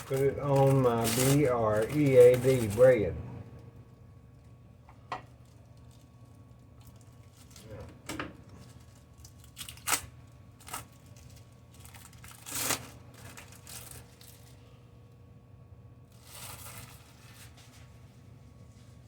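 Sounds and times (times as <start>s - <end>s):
rustling scrape: 16.1s - 19.0s.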